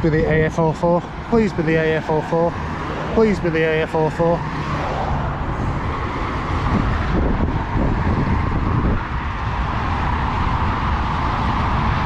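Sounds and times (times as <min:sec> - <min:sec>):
road traffic noise: 0:00.0 - 0:12.0
vehicle driving past: 0:01.3 - 0:08.2.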